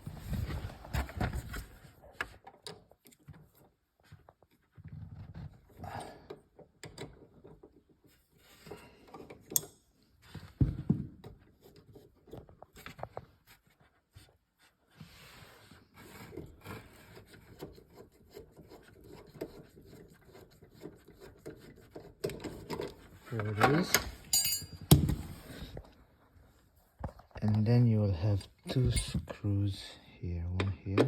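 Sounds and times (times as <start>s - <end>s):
rubbing and scraping on plastic: 10.1s - 23.8s.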